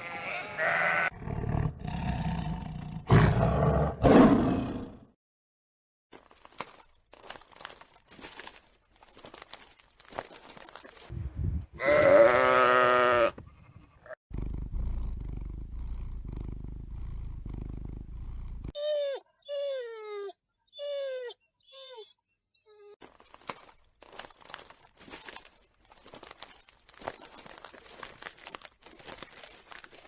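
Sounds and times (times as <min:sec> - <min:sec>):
wavering bleat-like animal call: 0:00.0 - 0:01.1, 0:11.8 - 0:14.2
short falling animal calls: 0:11.8 - 0:14.2.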